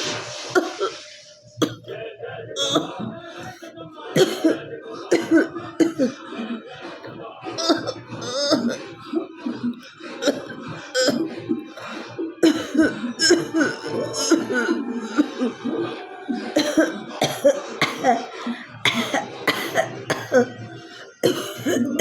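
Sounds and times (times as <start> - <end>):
woman coughing hard: 0.6 - 1.0, 1.6 - 1.9, 2.6 - 3.0, 4.2 - 6.2, 7.6 - 9.2, 10.2 - 11.3, 12.4 - 15.7, 16.6 - 22.0.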